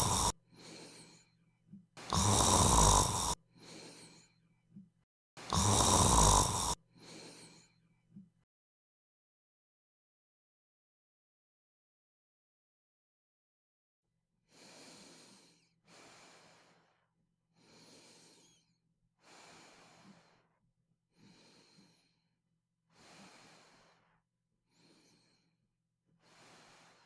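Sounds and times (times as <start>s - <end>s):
sleeper breathing: 0.0s - 1.2s, 2.0s - 4.3s, 5.4s - 7.6s.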